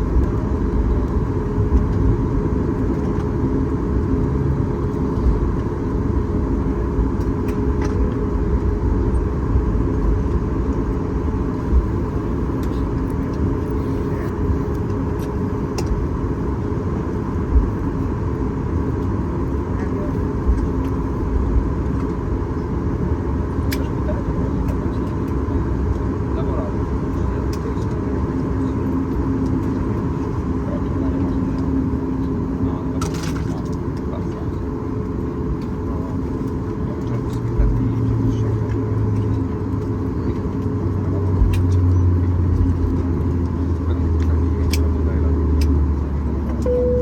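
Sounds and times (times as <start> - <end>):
aircraft cabin engine rumble: 0.0 - 47.0
constant tones: 46.6 - 47.0.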